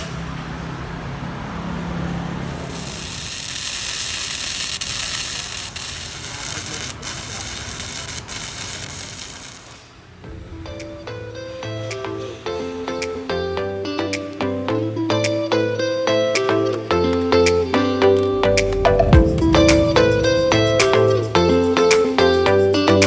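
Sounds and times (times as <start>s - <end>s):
arc welding crackling hiss: 2.4s - 10.2s, 11.8s - 13.7s
low hum: 18.1s - 21.7s.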